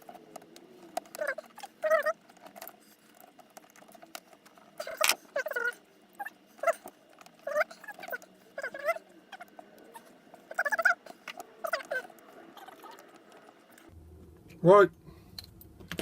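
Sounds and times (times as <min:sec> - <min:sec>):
short wavering squeaks: 0:04.8 - 0:13.9.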